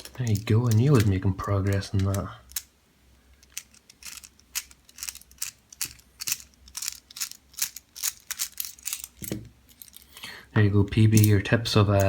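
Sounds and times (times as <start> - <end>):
padlock clicking and rattling: 0.0 - 2.7, 3.4 - 10.1.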